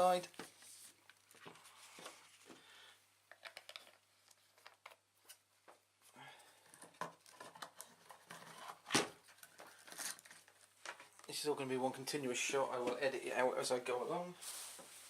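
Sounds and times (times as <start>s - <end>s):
paper crinkling: 6.8s - 11.4s.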